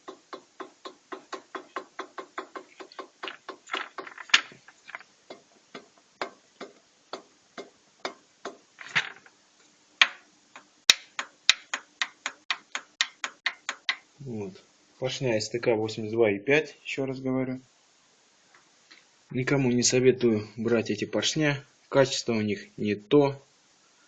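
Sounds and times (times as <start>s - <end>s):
pistons clicking against cylinder walls: 0.0s - 4.2s.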